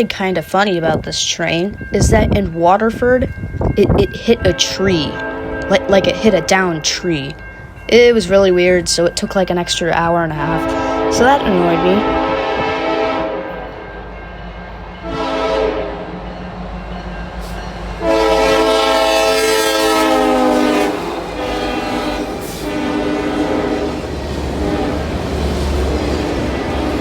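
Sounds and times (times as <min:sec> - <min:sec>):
locomotive engine rumble: 0:00.0 - 0:27.0
locomotive horn blasts: 0:04.4 - 0:06.8, 0:10.4 - 0:13.9, 0:15.0 - 0:16.2, 0:18.0 - 0:25.1.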